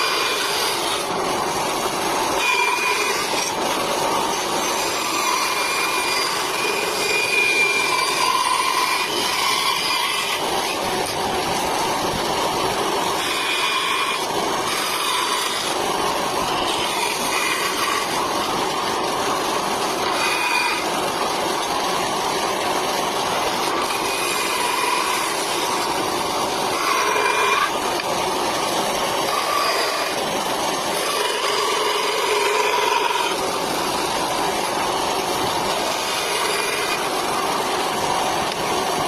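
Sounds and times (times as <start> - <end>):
bandsaw cutting wood: 0.0 - 38.7.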